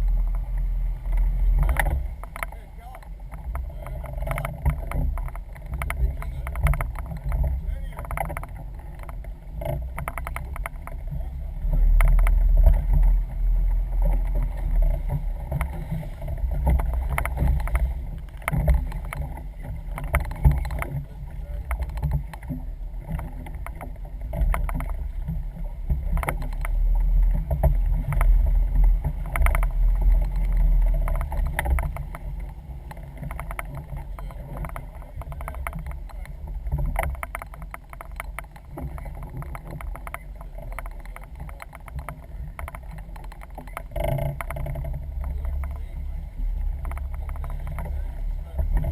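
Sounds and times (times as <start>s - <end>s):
boat low rumble: 0.0s - 48.9s.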